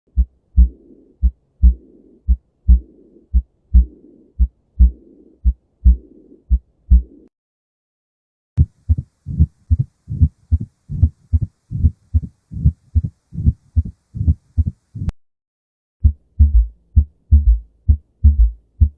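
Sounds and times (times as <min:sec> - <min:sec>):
whooshing heart murmur: 0:00.1 - 0:07.2, 0:08.6 - 0:15.1
heartbeat lub-dub: 0:00.1 - 0:07.3, 0:08.6 - 0:15.1, 0:16.0 - 0:18.9.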